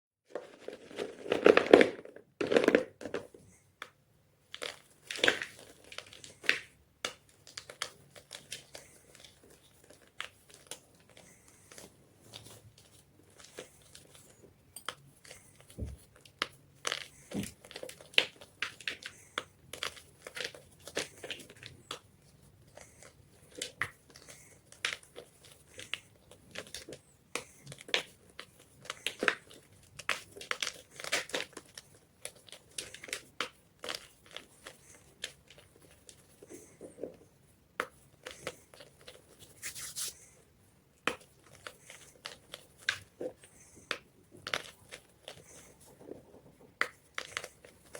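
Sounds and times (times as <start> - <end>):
chalk crushing and crunching: 37.8 - 40.4.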